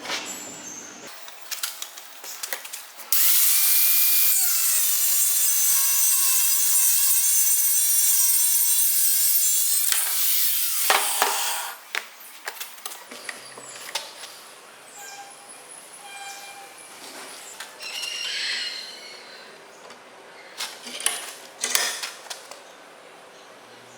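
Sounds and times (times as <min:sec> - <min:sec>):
wood chipper shredding wood: 0:03.2 - 0:11.8.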